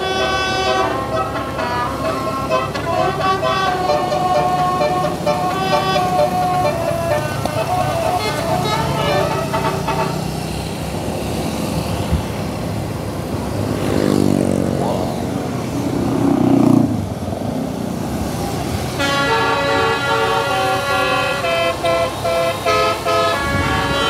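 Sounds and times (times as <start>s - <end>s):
low engine note: 0.0s - 10.2s
multi-tone bus horn: 0.0s - 11.0s, 18.7s - 24.0s
vehicle engine rising in pitch: 0.0s - 12.1s, 13.6s - 24.0s
road traffic passing: 0.0s - 24.0s.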